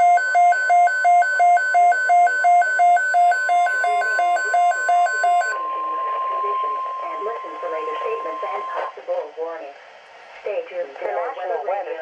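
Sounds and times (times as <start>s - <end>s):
rapid alert beeps: 0.0s - 5.7s
steady high tone: 2.3s - 8.9s.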